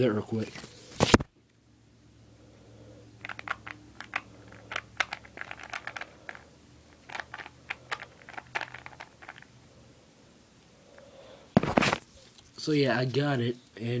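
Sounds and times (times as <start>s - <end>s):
puzzle cube plastic clicks: 3.2s - 9.5s.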